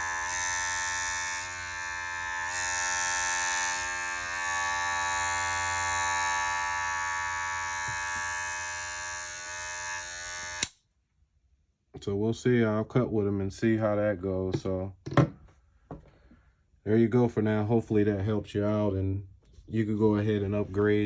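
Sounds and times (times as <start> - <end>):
hair clipper buzzing: 0.0 - 10.8.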